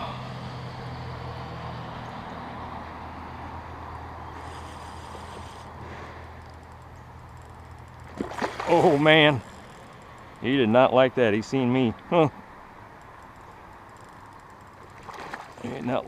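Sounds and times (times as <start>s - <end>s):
boat motor humming: 0.0s - 16.0s
water and wind hiss: 4.3s - 6.3s.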